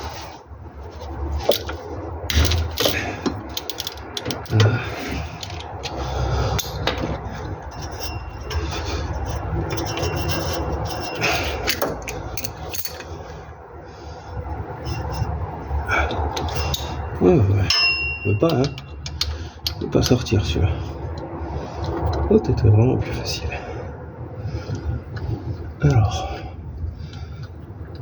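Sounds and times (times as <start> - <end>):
metal scraping and rubbing: 0.0 - 13.4, 14.6 - 19.8
hand tools clicking on metal: 1.5 - 13.1, 16.1 - 17.0, 17.6 - 20.3.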